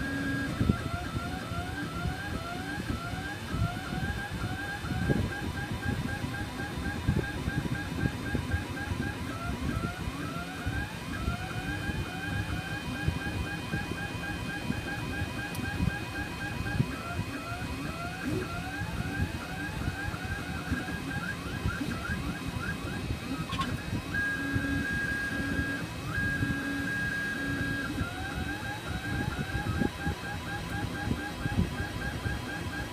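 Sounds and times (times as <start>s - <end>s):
faint steady high whine: 0.0s - 32.9s
stepper motors whining: 0.0s - 32.9s.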